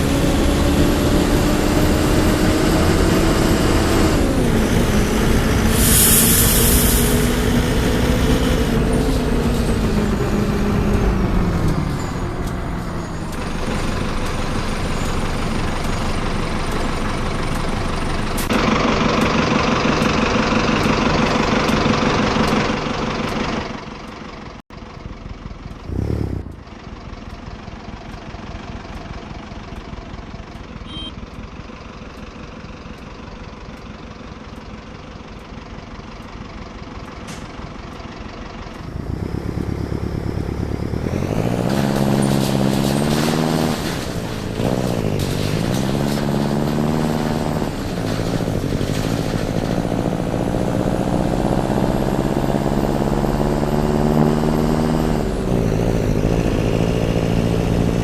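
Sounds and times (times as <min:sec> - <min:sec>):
bus diesel engine: 0:00.0 - 0:58.0
air brake hiss: 0:05.7 - 0:07.4.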